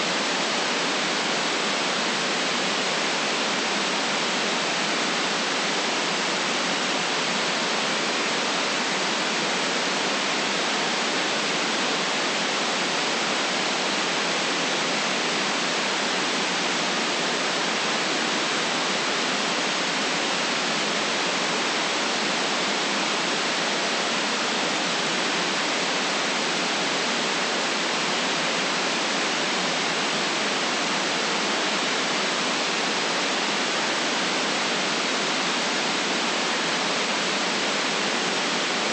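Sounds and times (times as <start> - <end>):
white noise hiss: 0.0 - 38.9.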